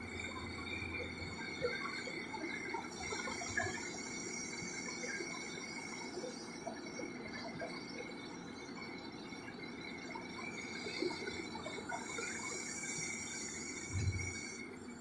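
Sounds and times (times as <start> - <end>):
high steady whine: 0.0 - 15.0
excavator mechanical noise: 11.2 - 15.0.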